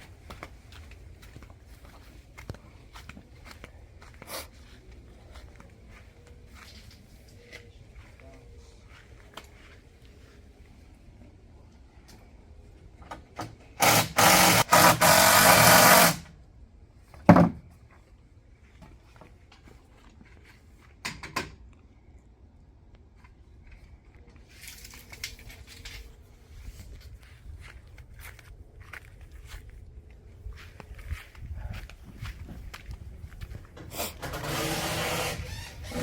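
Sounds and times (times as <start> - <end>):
power drill running: 13.8 - 16.3, 33.9 - 36.0.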